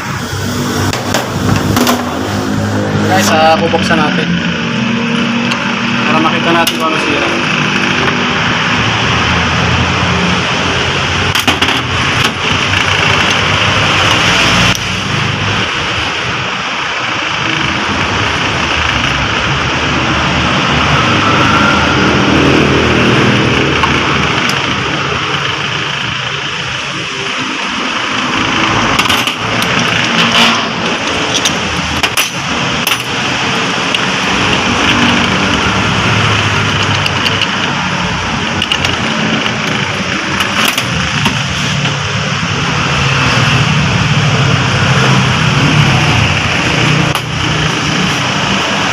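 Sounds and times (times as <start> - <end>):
engine running: 0.0 - 48.9
sharp clicks and knocks: 0.9 - 2.3, 11.2 - 14.9, 28.1 - 33.2, 33.9 - 42.0, 46.1 - 48.6.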